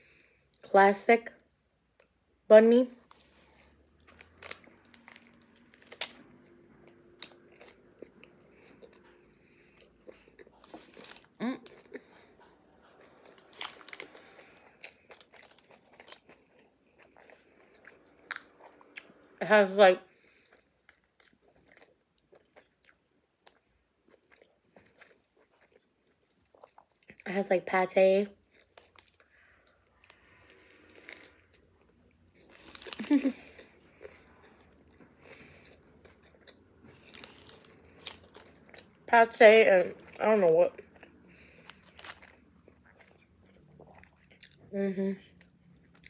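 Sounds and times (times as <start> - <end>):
crusty bread crunching: 3.0 - 18.8, 28.4 - 39.0, 40.0 - 44.6
chewing: 3.0 - 19.2, 20.2 - 27.2, 28.4 - 39.0, 40.0 - 46.0.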